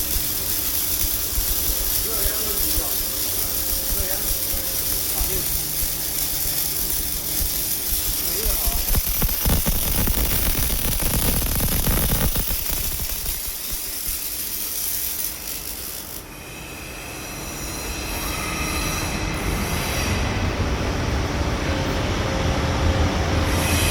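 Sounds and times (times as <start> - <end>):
welding crackling hiss: 0.0 - 16.3
high machine whine: 0.0 - 23.9.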